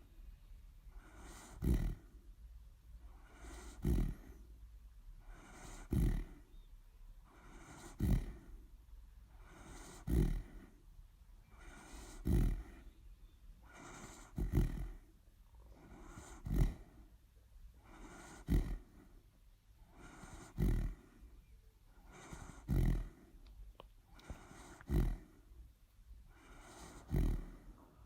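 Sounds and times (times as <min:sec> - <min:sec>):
dog snoring: 0:00.9 - 0:02.3, 0:03.0 - 0:04.5, 0:05.2 - 0:06.6, 0:07.2 - 0:08.6, 0:09.3 - 0:10.8, 0:11.4 - 0:13.0, 0:13.6 - 0:15.1, 0:15.7 - 0:17.1, 0:17.8 - 0:19.2, 0:19.8 - 0:21.3, 0:21.9 - 0:23.4, 0:24.1 - 0:25.5, 0:26.3 - 0:27.9.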